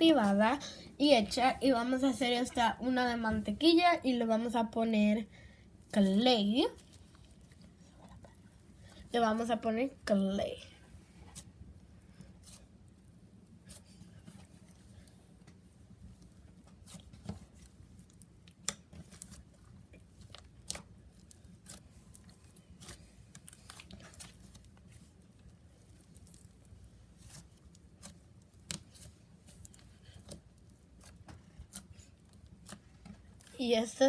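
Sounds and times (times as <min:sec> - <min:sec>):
wet clicks of slime kneading: 0:14.4 - 0:33.6.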